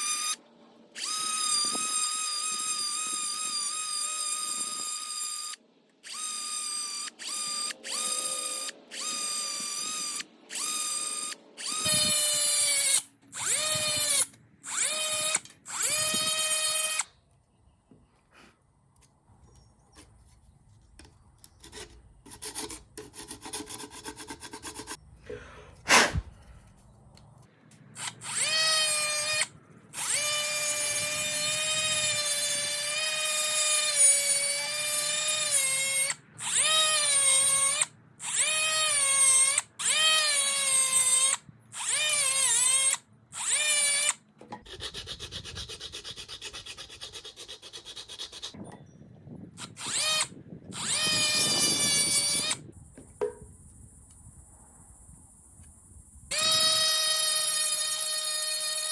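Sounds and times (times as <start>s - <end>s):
power tool motor whining: 0.0s - 17.1s, 27.9s - 44.2s, 49.6s - 52.7s, 56.3s - 58.9s.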